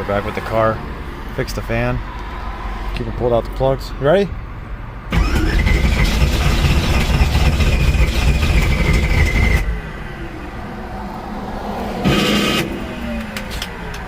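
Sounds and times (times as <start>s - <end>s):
starter motor cranking engine: 5.1s - 9.7s.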